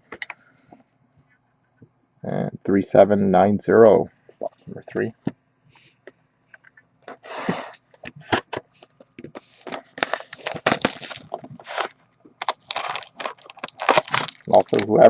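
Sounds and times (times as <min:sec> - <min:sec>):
plastic wrapping crinkling and tearing: 0:08.8 - 0:15.0.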